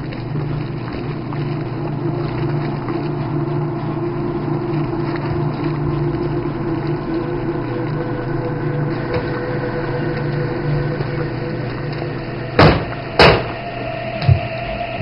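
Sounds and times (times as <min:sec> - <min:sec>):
low mechanical hum: 0:00.0 - 0:15.0
sharp knocks: 0:12.6 - 0:13.6.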